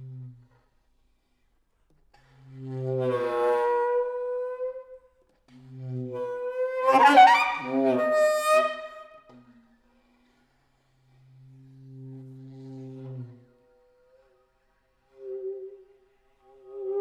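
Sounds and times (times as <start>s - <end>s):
saxophone long held notes: 6.8s - 9.3s.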